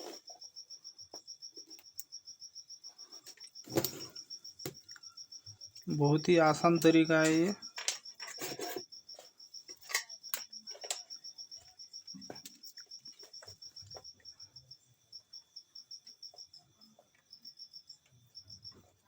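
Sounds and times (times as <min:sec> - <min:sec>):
cricket chirping: 0:00.0 - 0:19.0.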